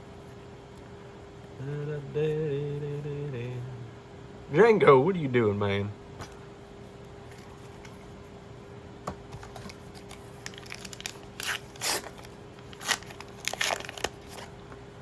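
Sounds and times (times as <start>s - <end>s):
foil pack tearing and crinkling: 9.5s - 14.5s.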